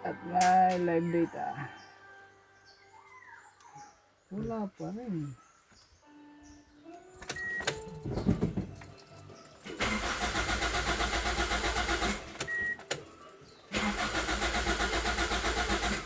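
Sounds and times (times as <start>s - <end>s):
car engine cranking: 7.2s - 16.0s.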